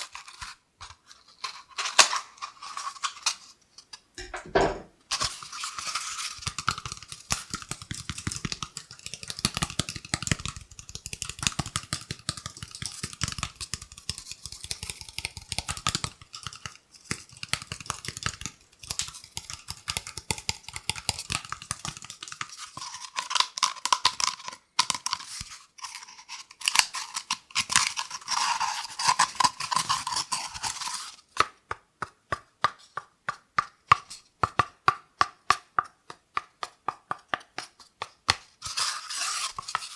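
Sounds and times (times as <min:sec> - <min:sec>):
scratching on cardboard tube: 0:25.4 - 0:31.2, 0:36.6 - 0:39.9.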